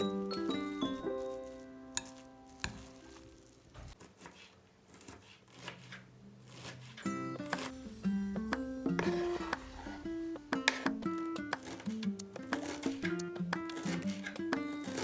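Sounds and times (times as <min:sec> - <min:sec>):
guitar background music: 0:00.0 - 0:02.6, 0:07.1 - 0:15.0.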